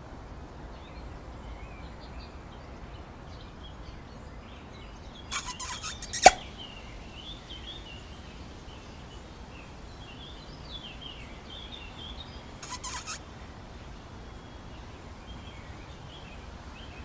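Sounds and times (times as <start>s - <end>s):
steady background hiss: 0.0s - 17.0s
birds chirping and warbling: 3.8s - 13.2s.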